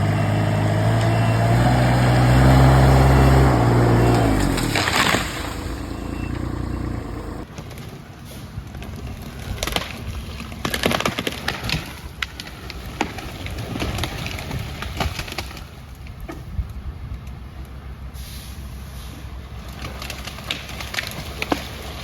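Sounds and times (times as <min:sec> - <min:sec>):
wood breaking and splintering: 0:00.0 - 0:06.6, 0:08.8 - 0:16.1, 0:19.6 - 0:22.0
engine running: 0:00.0 - 0:07.5.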